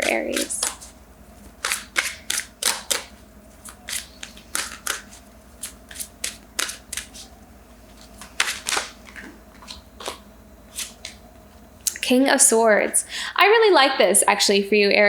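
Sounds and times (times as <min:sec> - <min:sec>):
cards being shuffled: 0:00.0 - 0:07.3, 0:07.9 - 0:11.2.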